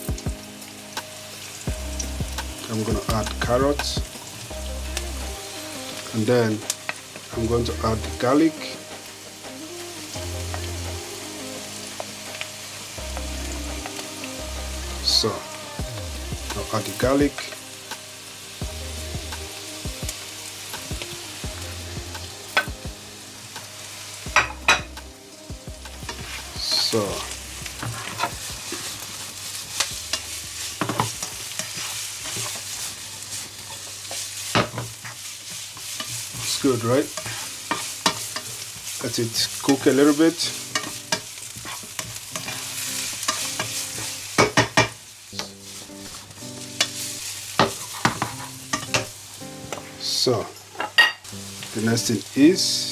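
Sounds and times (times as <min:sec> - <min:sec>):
vegetables sizzling in oil: 0:00.0 - 0:52.9
utensil stirring against pan: 0:05.6 - 0:49.2.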